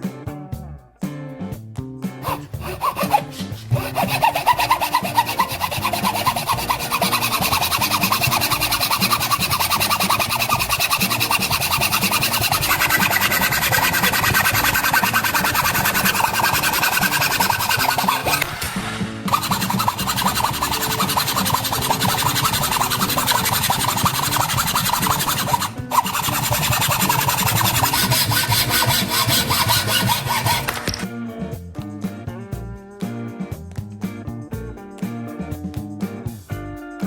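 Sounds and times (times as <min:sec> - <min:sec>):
background music: 0:00.0 - 0:37.0
drill bit rasping on sharpener: 0:02.2 - 0:31.0.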